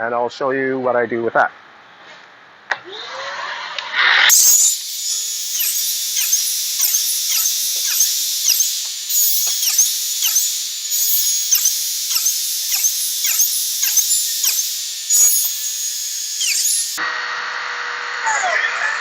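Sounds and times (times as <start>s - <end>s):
router high-pitched whine: 4.3s - 18.6s.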